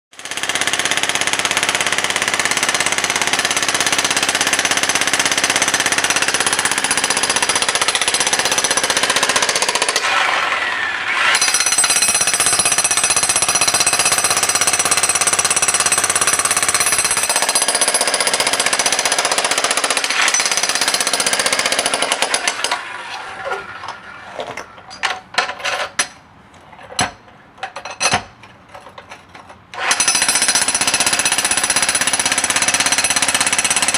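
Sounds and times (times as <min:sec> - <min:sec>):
jackhammer hammering: 0:00.2 - 0:22.9, 0:29.8 - 0:33.9.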